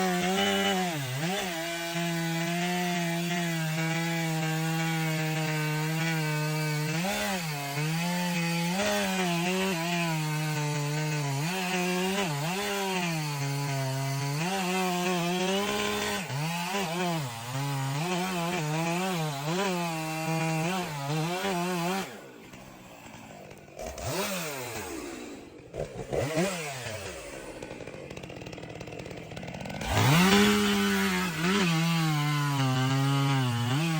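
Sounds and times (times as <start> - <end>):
chainsaw running at high revs: 0.0 - 33.9.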